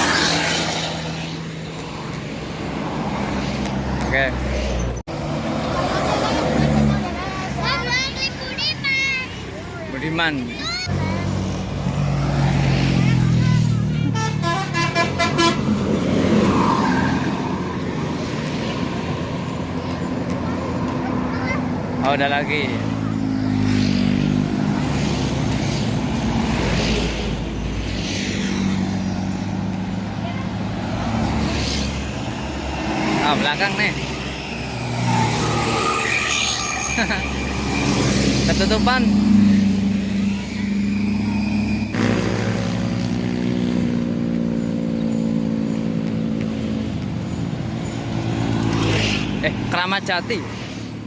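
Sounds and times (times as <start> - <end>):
road noise: 0.0 - 51.0
bus engine humming: 28.5 - 50.2.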